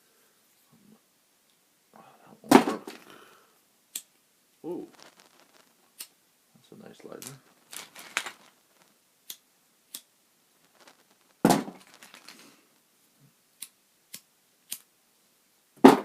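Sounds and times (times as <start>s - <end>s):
plastic lighters clattering: 7.1s - 9.0s, 10.7s - 12.6s
lighter clicks: 9.2s - 10.1s, 13.6s - 14.9s.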